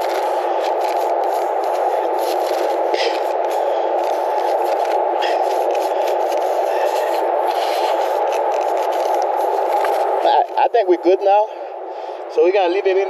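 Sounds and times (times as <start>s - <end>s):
reamer tool rasping rubber: 0.0s - 10.1s
steady rushing background noise: 0.0s - 13.0s.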